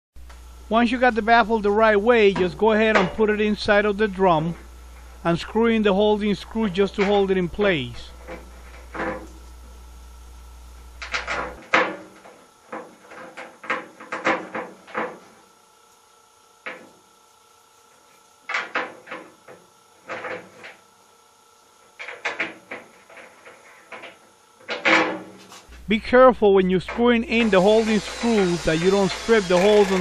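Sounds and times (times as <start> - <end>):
low hum: 0.2 - 11.6.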